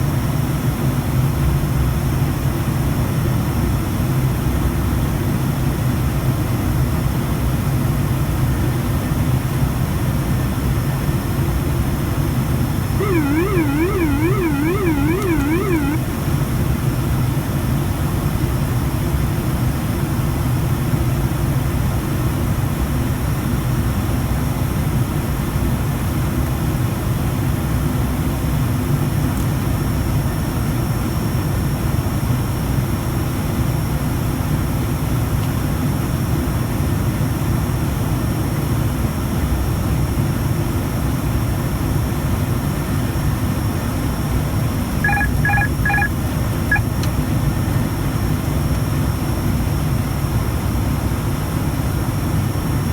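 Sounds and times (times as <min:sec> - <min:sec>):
turboprop engines droning: 0:13.0 - 0:16.0.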